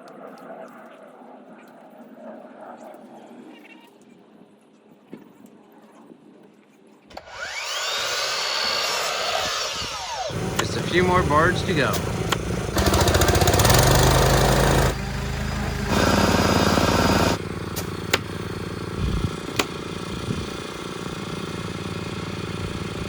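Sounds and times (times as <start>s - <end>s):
nailer shots: 7.1s - 15.0s, 15.6s - 18.4s, 19.5s - 19.8s
power saw cutting boards: 7.1s - 23.0s.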